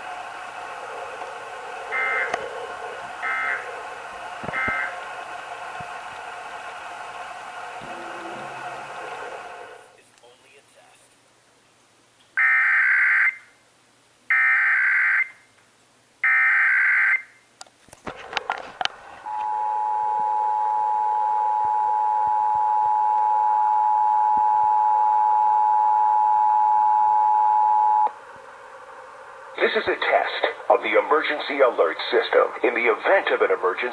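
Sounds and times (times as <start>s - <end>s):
two-tone attention signal: 19.3s - 28.1s.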